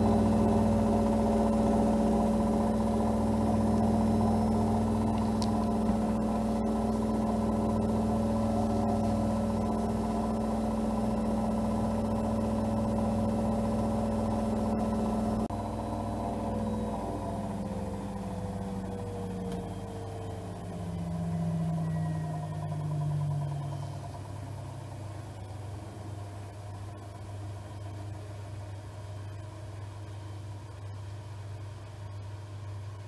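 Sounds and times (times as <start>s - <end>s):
washing machine drum spinning: 0.0s - 25.3s.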